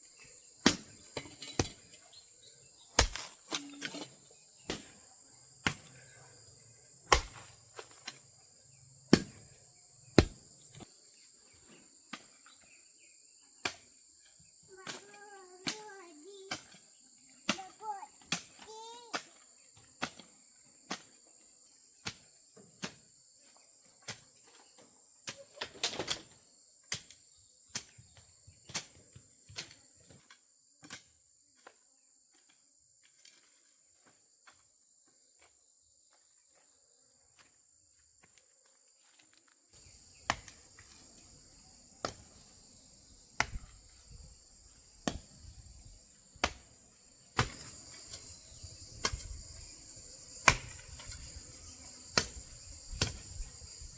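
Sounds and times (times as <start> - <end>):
crickets buzzing: 0.0 - 30.8, 39.8 - 53.9.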